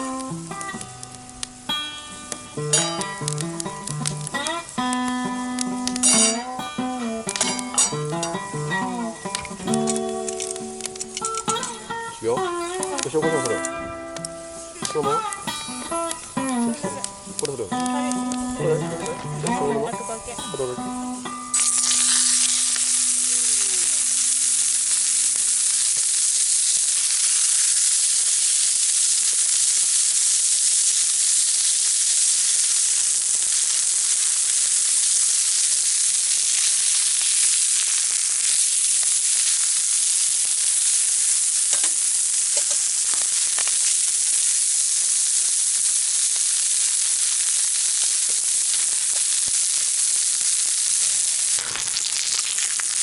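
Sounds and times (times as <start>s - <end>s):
meat sizzling in a pan: 0.0s - 53.0s
faint ticks: 0.1s - 6.4s, 7.0s - 19.4s.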